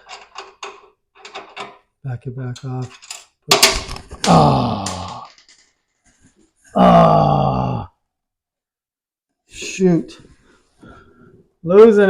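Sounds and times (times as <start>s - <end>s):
man groaning with effort: 4.2s - 5.4s, 6.7s - 8.0s.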